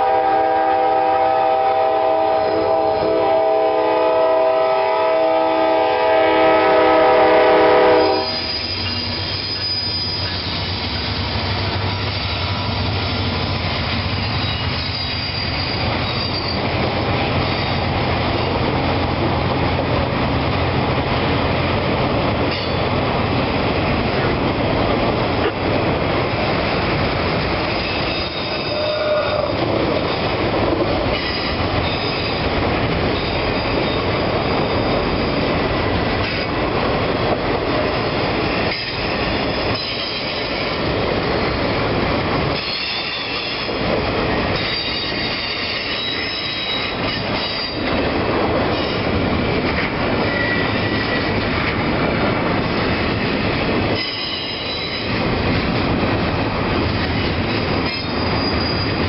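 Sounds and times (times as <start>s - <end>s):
train wheels rumbling on rails: 0.0s - 59.0s
high-pitched wheel squeal: 7.9s - 11.2s, 14.2s - 16.8s, 27.7s - 29.6s, 31.1s - 32.5s, 33.2s - 35.5s, 42.6s - 43.7s, 44.6s - 47.9s, 54.0s - 55.2s, 57.5s - 59.0s.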